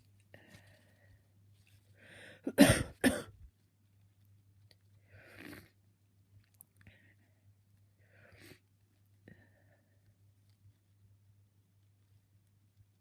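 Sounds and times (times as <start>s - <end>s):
person sneezing: 2.4s - 3.3s.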